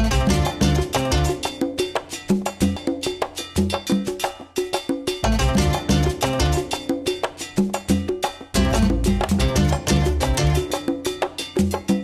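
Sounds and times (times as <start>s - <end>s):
cowbell: 0.0s - 12.0s
upbeat latin music: 0.0s - 12.0s.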